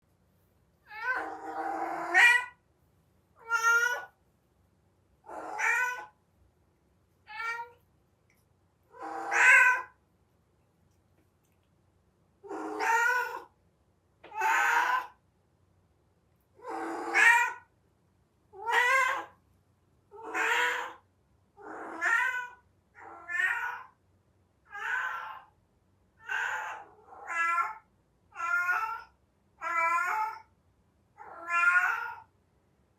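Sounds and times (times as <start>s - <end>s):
cat yowling: 0.9s - 2.6s, 3.4s - 4.2s, 5.3s - 6.2s, 7.3s - 7.8s, 8.9s - 10.0s, 12.4s - 13.5s, 14.3s - 15.2s, 16.6s - 17.7s, 18.6s - 19.4s, 20.1s - 21.0s, 21.6s - 23.9s, 24.7s - 25.5s, 26.2s - 30.5s, 31.2s - 32.3s.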